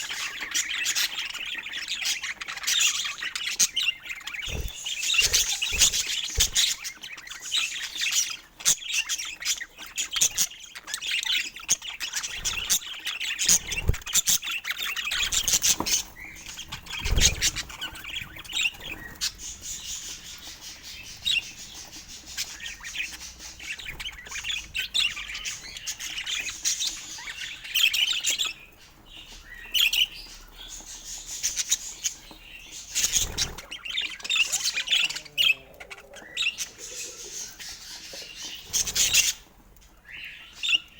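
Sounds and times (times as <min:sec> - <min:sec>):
budgerigars chirping and chattering: 0:00.0 - 0:40.9.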